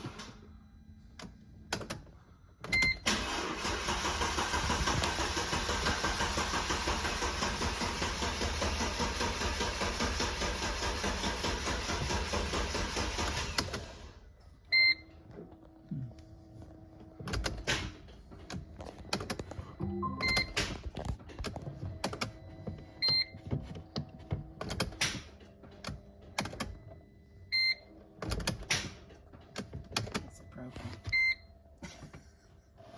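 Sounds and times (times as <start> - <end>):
engine cranking on starter motor: 0.0 - 0.5, 2.9 - 14.3
short electronic chime: 19.8 - 20.6.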